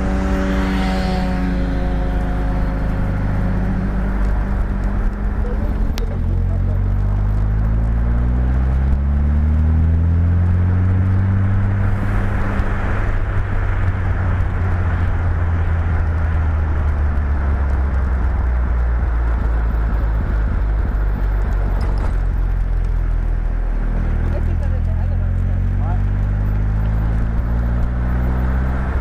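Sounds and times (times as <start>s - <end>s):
car engine revving: 0.0s - 29.0s
wind or road noise hiss: 11.2s - 18.8s.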